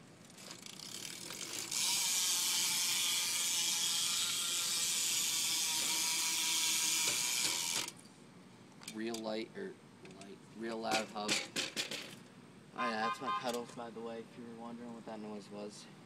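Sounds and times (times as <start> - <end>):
bike hub ticking buzz: 0.2 - 8.0.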